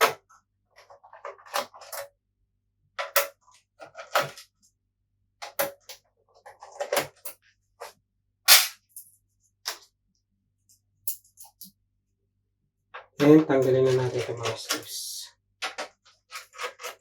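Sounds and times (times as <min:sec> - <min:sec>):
plastic parts clicking and clacking: 0:00.8 - 0:02.1, 0:03.0 - 0:04.5, 0:05.4 - 0:07.4, 0:13.0 - 0:15.0, 0:15.6 - 0:17.0.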